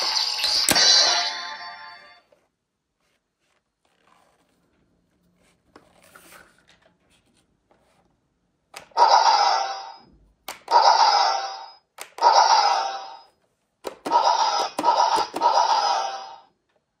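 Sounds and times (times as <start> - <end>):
toy electronic sound effect: 0.0 - 2.0, 8.9 - 10.1, 10.7 - 13.3, 14.0 - 16.5.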